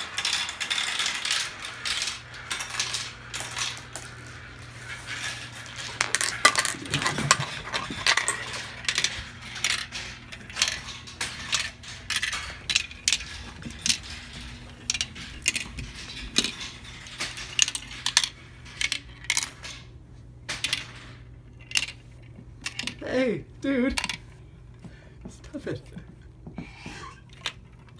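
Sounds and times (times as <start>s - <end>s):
marbles clacking through marble run: 0.0s - 19.9s.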